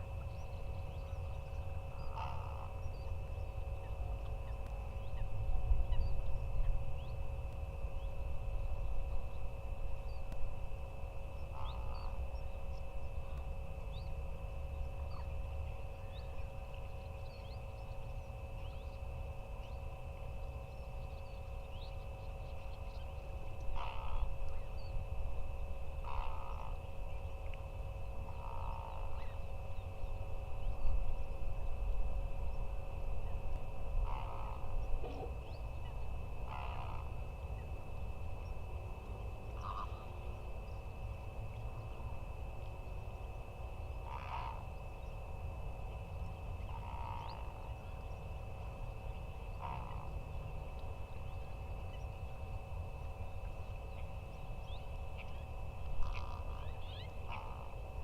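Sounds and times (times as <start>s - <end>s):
low rumble of wind: 0.0s - 58.0s
waterbirds calling: 0.2s - 7.1s, 11.2s - 14.1s, 19.6s - 29.7s, 39.4s - 40.3s, 43.9s - 45.2s, 46.1s - 48.4s, 53.4s - 58.0s.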